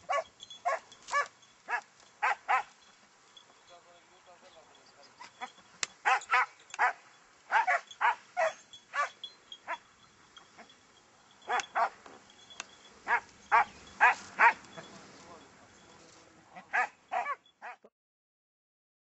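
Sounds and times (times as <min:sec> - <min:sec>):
hounds barking: 0:00.0 - 0:02.8, 0:05.1 - 0:10.8, 0:11.4 - 0:15.0, 0:16.5 - 0:17.8.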